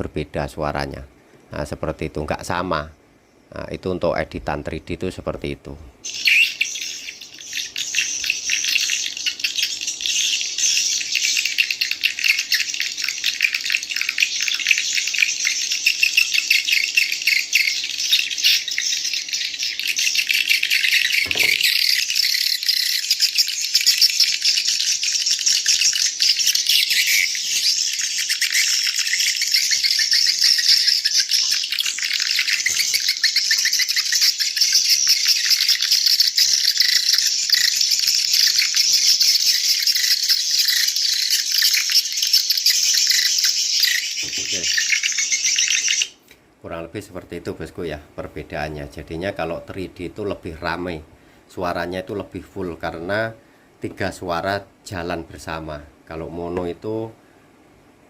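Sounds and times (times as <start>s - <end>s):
swiftlets twittering: 6.0s - 46.2s.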